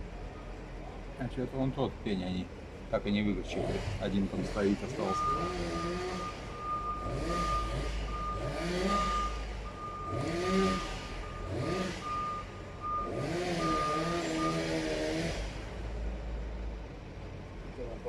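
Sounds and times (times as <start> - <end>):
engine revving: 3.2 - 16.2
reversing alarm beeping: 4.9 - 15.0.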